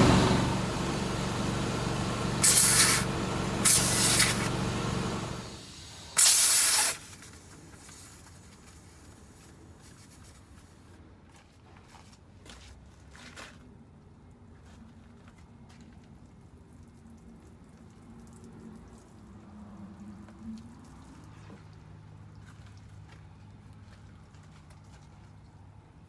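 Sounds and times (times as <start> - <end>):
air compressor humming: 0.0 - 8.8
short hissing sprays: 1.7 - 10.4.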